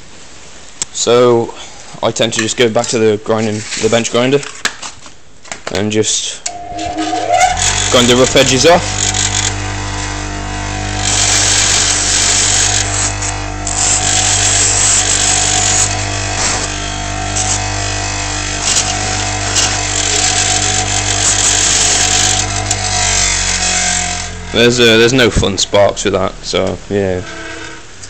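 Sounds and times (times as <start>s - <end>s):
bench grinder motor hum: 6.5s - 28.0s
grinding wheel on steel: 6.5s - 28.0s.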